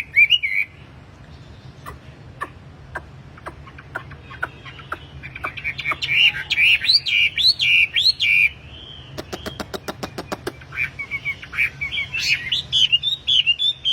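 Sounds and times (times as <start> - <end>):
bird chirps: 0.0 - 13.9
songbird whistling notes: 10.7 - 13.9.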